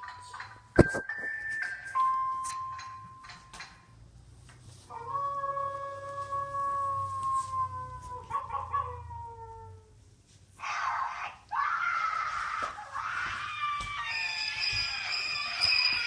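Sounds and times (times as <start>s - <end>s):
long wail falling in pitch: 4.9s - 8.3s
shrill scream: 10.6s - 16.0s.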